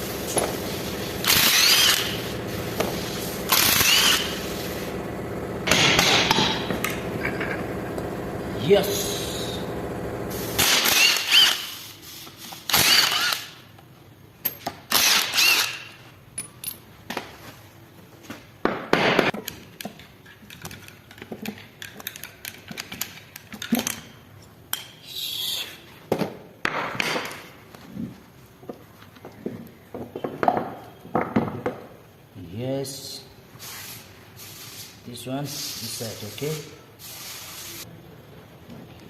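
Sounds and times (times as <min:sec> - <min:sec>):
metal tools clinking and scraping: 0:07.2 - 0:07.7, 0:16.4 - 0:16.9.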